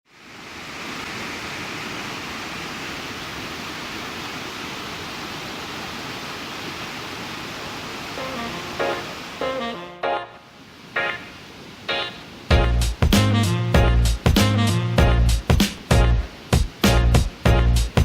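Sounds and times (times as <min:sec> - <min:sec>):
steady rushing noise: 0:07.7 - 0:09.6, 0:15.2 - 0:18.0
music: 0:08.2 - 0:10.4, 0:11.9 - 0:18.0.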